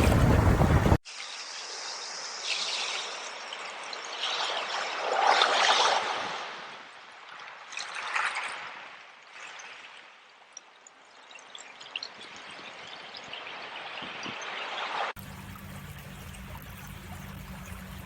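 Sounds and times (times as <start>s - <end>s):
water trickling and splashing: 0.0s - 18.0s
water drips: 15.2s - 18.0s.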